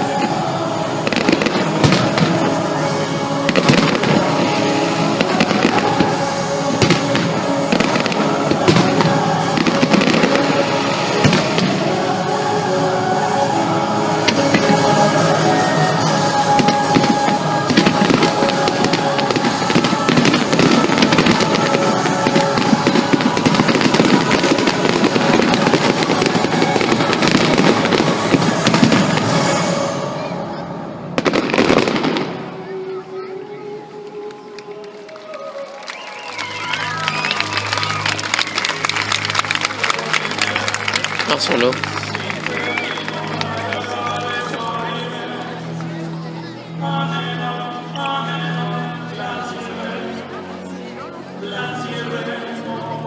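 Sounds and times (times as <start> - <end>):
fireworks bangs and crackles: 0.0 - 12.6, 14.0 - 30.3, 31.2 - 32.8, 35.9 - 45.9
music playing: 0.0 - 53.0.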